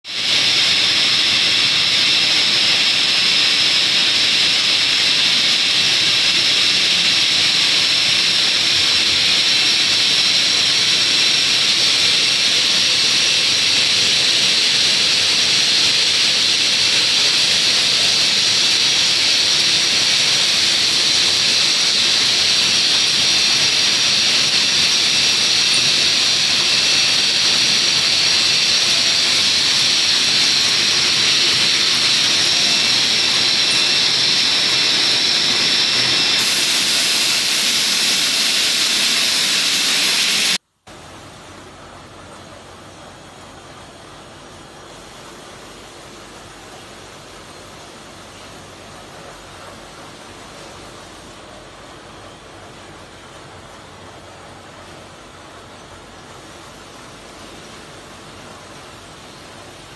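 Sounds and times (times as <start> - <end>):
bottling machine hissing: 0.1 - 40.6.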